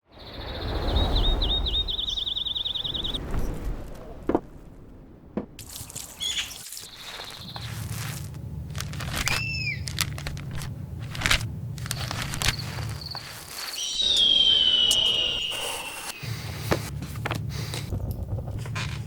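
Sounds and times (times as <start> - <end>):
falling sweeps: 0.1 - 8.4, 12.2 - 17.1
bird trilling: 0.3 - 3.2, 6.2 - 7.9, 9.2 - 10.0, 12.0 - 16.2
low rumble: 0.5 - 6.2, 7.3 - 13.3, 14.0 - 19.0
steady low hum: 7.3 - 19.0
short chirp: 12.5 - 16.3.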